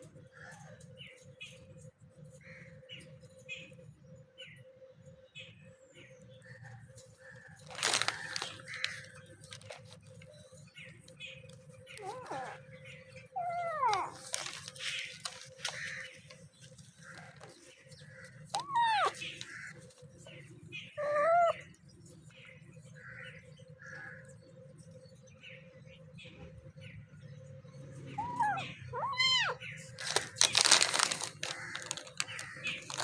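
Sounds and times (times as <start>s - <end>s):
cat meowing: 12.0s - 12.6s, 13.3s - 14.3s, 18.6s - 19.3s, 21.0s - 21.6s, 28.2s - 29.6s.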